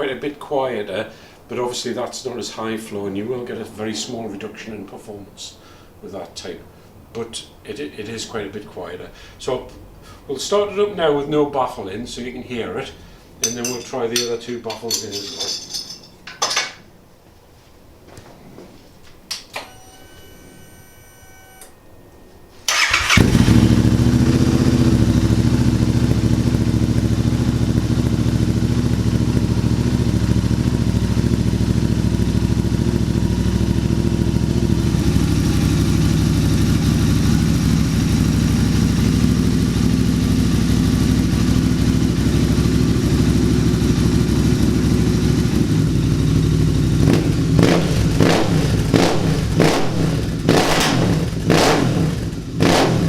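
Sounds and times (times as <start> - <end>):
electric starter whine: 19.5 - 25.8
motorcycle engine idling: 22.7 - 52.6.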